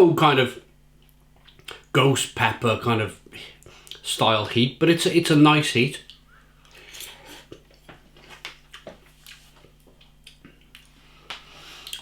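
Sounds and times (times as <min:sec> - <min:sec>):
person chewing: 0:01.0 - 0:01.9, 0:03.6 - 0:04.0, 0:06.0 - 0:12.0.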